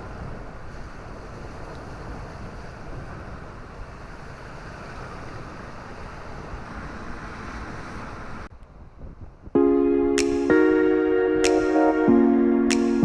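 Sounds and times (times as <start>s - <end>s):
wind blowing across microphone: 0.0s - 9.6s.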